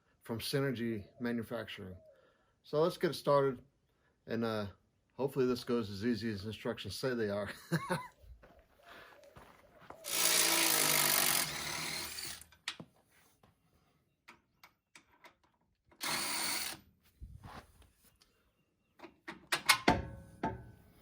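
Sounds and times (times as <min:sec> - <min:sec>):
cordless power tool running: 0:10.0 - 0:12.4.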